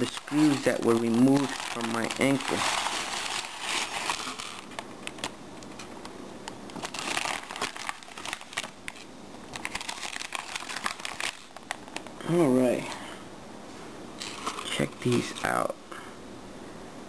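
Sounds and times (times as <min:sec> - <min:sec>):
packaging crinkling: 0:00.0 - 0:06.0, 0:06.7 - 0:12.2, 0:14.2 - 0:15.6.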